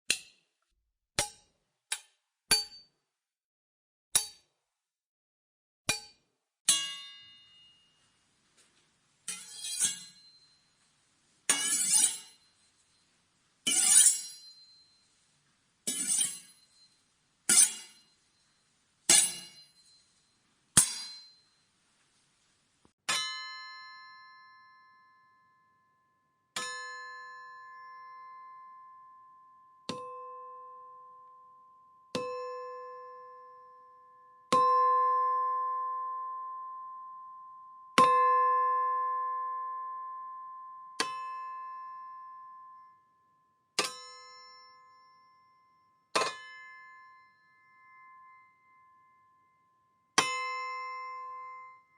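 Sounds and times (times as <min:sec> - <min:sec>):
metal-on-metal sword clashes: 0:05.9 - 0:07.8, 0:09.3 - 0:10.6, 0:11.5 - 0:12.5, 0:13.7 - 0:14.9, 0:15.9 - 0:18.2, 0:19.1 - 0:20.1, 0:20.8 - 0:21.5, 0:43.8 - 0:44.6, 0:46.2 - 0:46.6
ringing blade pings: 0:05.9 - 0:08.0, 0:09.3 - 0:10.9, 0:11.5 - 0:13.1, 0:13.7 - 0:15.2, 0:15.9 - 0:21.7, 0:23.1 - 0:25.5, 0:26.6 - 0:43.2, 0:43.8 - 0:49.6, 0:50.2 - 0:51.9
ringing sword strike: 0:09.3 - 0:10.6, 0:15.9 - 0:18.2, 0:19.1 - 0:20.1, 0:20.8 - 0:21.5.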